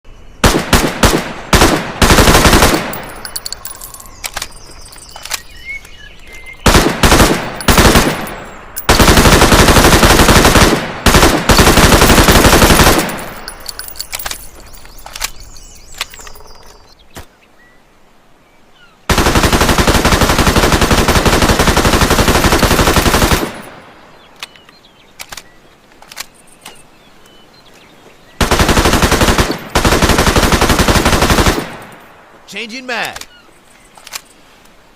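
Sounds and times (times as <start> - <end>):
submachine gun firing bursts: 0.4 - 3.4, 6.6 - 14.0, 19.1 - 23.8, 28.4 - 32.0
gunfire echo: 0.4 - 3.8, 6.6 - 14.0.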